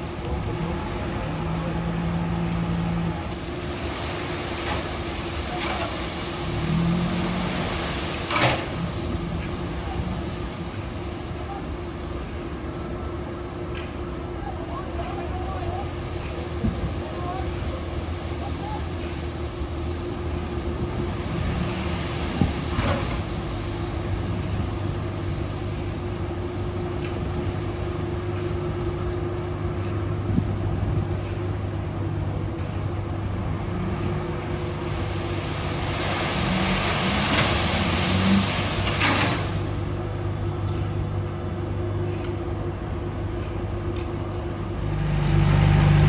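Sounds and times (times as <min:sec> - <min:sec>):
diesel engine humming: 0:00.0 - 0:46.0.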